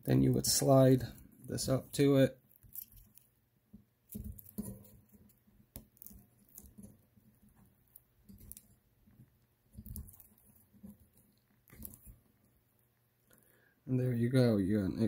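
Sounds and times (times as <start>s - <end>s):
hands handling connector and wires: 1.1s - 12.2s.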